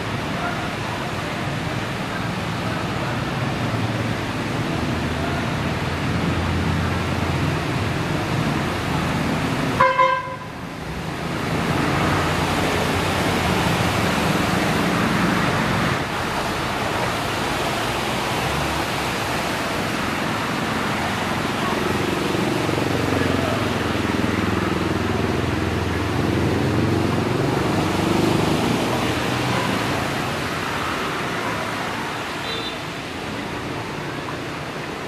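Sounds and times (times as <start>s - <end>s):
rain: 0.0s - 35.0s
street traffic: 0.0s - 35.0s
vehicle horn double toot: 9.8s - 10.5s.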